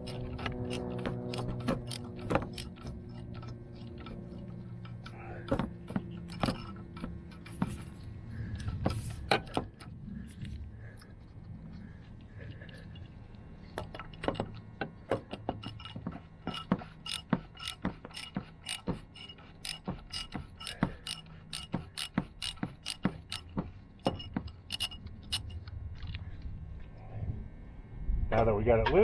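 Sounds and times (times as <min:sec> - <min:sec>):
socket ratchet clicking: 0:00.0 - 0:09.7, 0:13.9 - 0:25.6.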